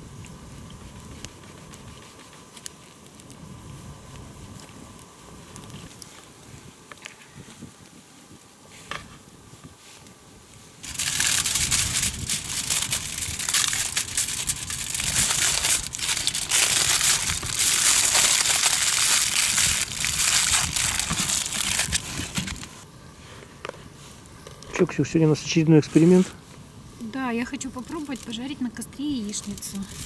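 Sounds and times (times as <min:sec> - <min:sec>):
loud crinkling and crunching: 0:10.8 - 0:22.8, 0:24.6 - 0:26.4, 0:27.3 - 0:30.0.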